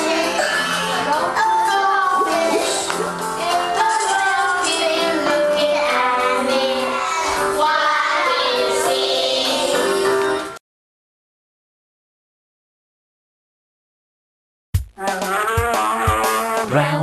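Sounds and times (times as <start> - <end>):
children singing: 0.0 - 10.4
instrumental backing track: 0.0 - 10.6, 14.8 - 17.0.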